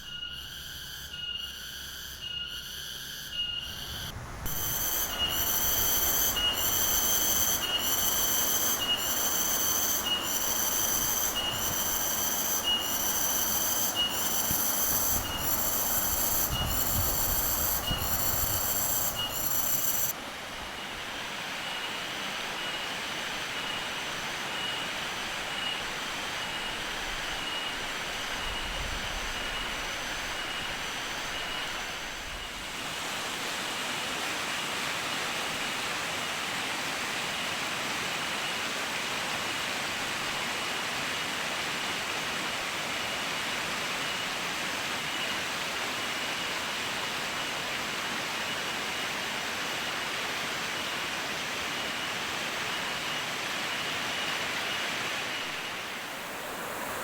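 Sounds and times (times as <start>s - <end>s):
faint insect quick pulsing call: 0.0s - 20.1s
cicada pulsing call: 0.0s - 36.7s, 42.9s - 57.0s.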